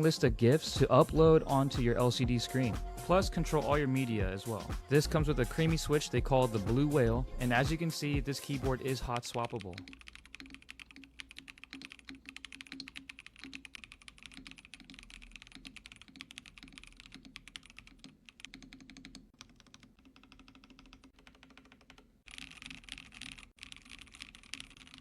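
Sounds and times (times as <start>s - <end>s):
mechanical keyboard typing: 7.6s - 25.0s.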